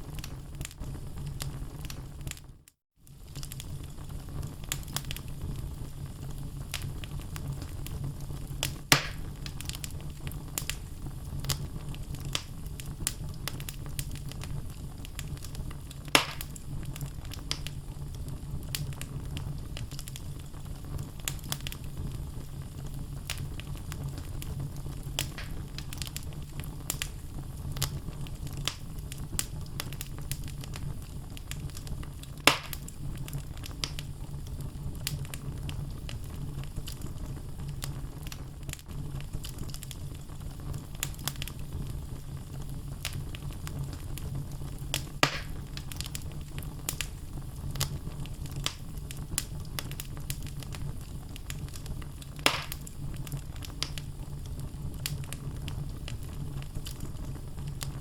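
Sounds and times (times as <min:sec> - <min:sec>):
flames rumbling in fireplace: 0:00.0 - 0:58.0
logs crackling: 0:08.6 - 0:17.8, 0:25.0 - 0:27.2, 0:31.4 - 0:34.1, 0:44.7 - 0:55.3
sharp wood pops: 0:08.9 - 0:09.3, 0:16.2 - 0:16.5, 0:25.3 - 0:25.6, 0:32.5 - 0:32.8, 0:45.2 - 0:45.6, 0:52.5 - 0:52.9.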